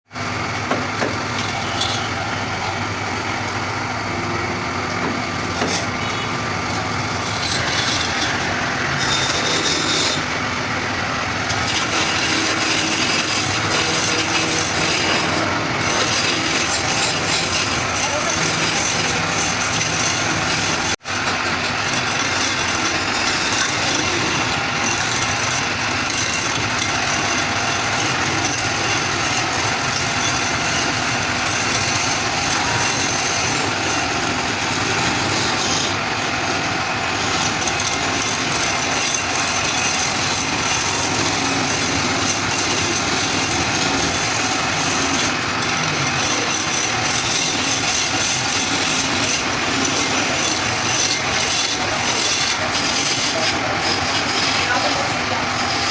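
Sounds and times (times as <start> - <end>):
woodturning lathe running: 0.1 - 55.9.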